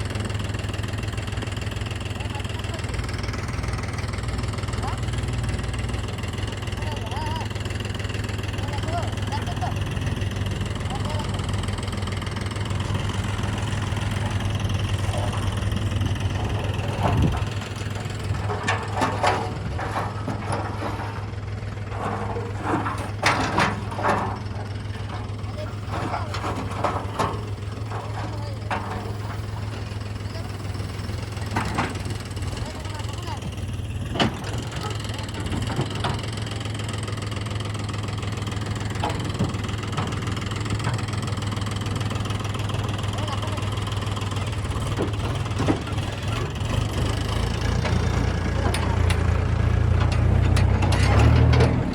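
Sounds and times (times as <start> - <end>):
diesel engine idling: 0.0 - 51.9
clatter: 43.0 - 51.9.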